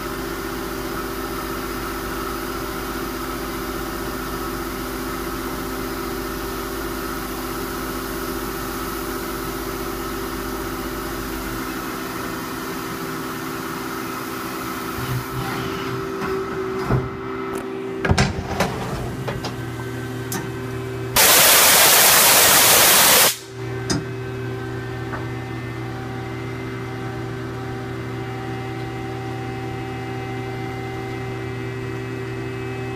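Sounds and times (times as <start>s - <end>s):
loud rushing hiss: 21.2s - 23.5s.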